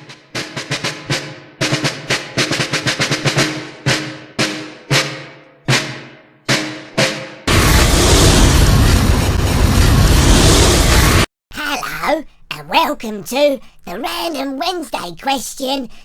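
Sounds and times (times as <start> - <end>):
rapid drum roll: 0.0 - 11.3.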